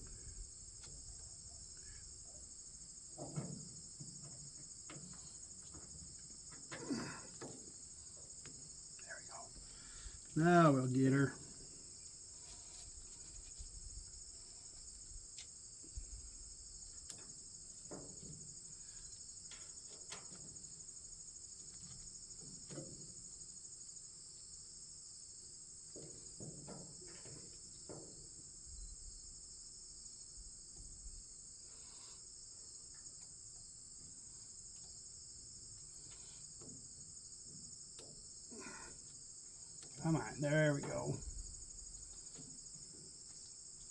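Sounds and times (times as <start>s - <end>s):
insects chirring: 0.0s - 43.9s
hand tools on metal: 38.0s - 41.4s.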